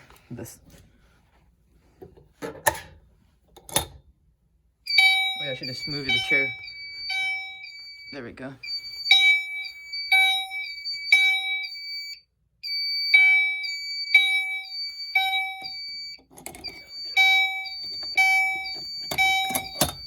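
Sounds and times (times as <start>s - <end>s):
steady high tone: 4.9s - 12.2s
fire alarm horn blasts: 4.9s - 20.0s.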